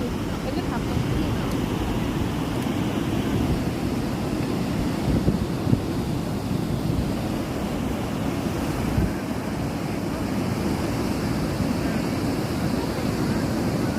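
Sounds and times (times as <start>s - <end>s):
sea surf washing in: 0.0s - 13.9s
wind buffeting microphone: 0.0s - 13.9s.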